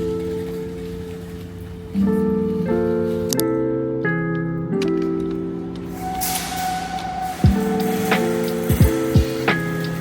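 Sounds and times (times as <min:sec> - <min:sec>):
sustained chords music: 0:01.8 - 0:10.0
rushing hiss: 0:05.9 - 0:10.0.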